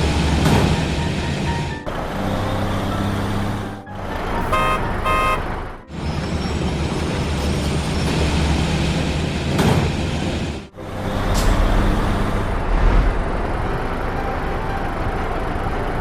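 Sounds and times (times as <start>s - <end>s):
heavy vehicle engine running: 0.0s - 16.0s
short horn beeps: 4.4s - 5.6s.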